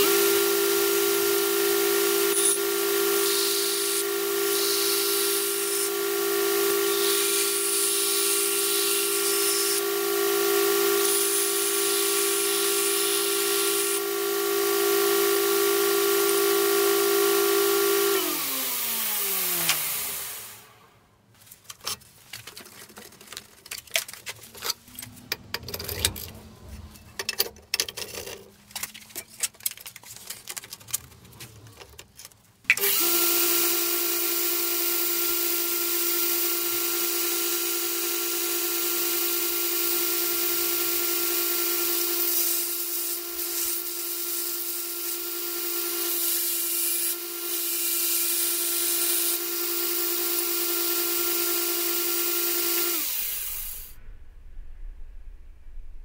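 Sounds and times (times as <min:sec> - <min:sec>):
belt grinder coasting to a stop: 0:00.0 - 0:20.6, 0:32.7 - 0:53.9
belt grinder running: 0:00.0 - 0:20.7, 0:32.7 - 0:54.0.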